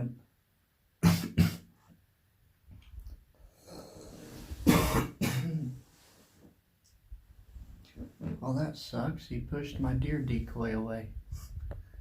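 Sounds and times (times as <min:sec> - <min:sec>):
man coughing: 0:01.0 - 0:01.7, 0:04.6 - 0:05.8.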